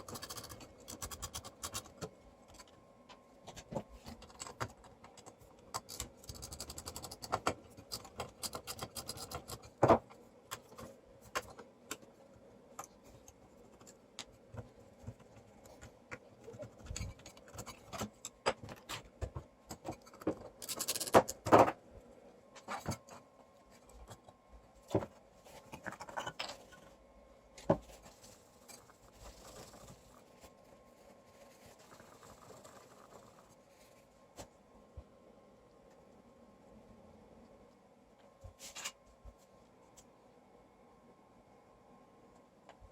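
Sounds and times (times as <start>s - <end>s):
tools clicking and scraping: 15.6s - 21.5s.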